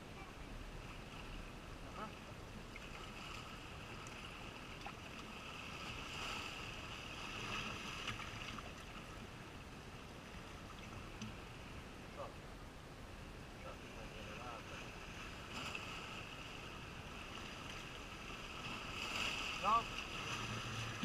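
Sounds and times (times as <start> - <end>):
faint high hum: 0.0 - 21.0
water on shore: 0.0 - 21.0
wind: 0.0 - 21.0.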